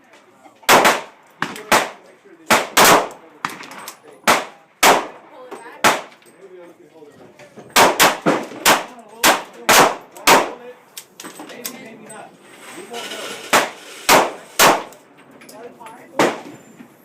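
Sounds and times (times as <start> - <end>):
handgun shots: 0.7 - 5.2, 7.8 - 10.6, 13.5 - 15.0.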